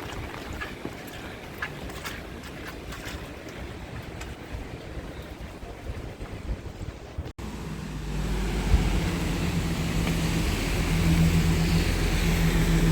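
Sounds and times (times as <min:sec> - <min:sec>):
subway train motor hum: 0:07.4 - 0:12.9.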